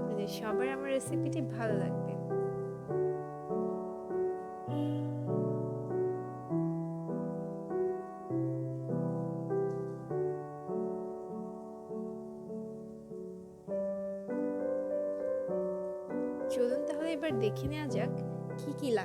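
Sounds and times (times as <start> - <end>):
gentle piano melody: 0.0 - 19.0.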